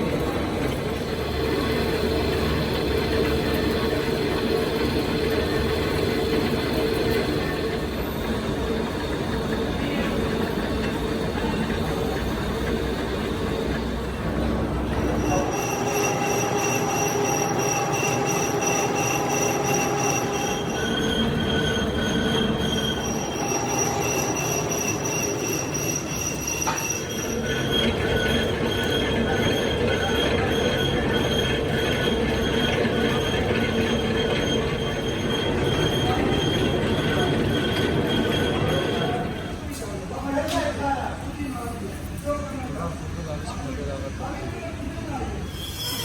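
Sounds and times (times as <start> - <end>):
machinery grinding noise: 0.1 - 39.7
metal-on-metal squeal: 12.2 - 40.0, 45.4 - 46.0.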